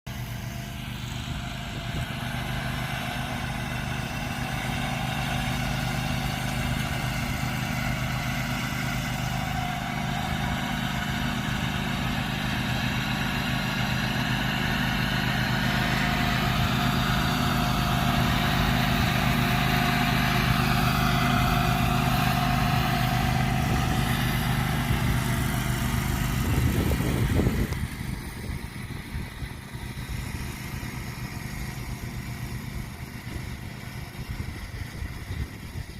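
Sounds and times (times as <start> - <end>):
riding lawnmower engine running: 0.0 - 35.9.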